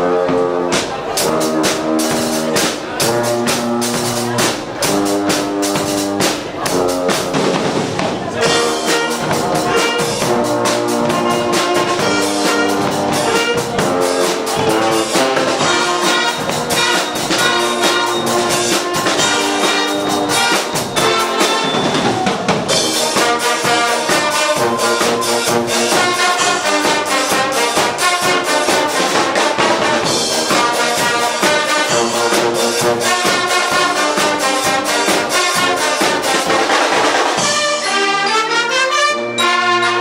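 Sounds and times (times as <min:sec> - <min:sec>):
drums and cymbals beat: 0:00.0 - 0:38.3
brass blaring chords: 0:08.2 - 0:40.0.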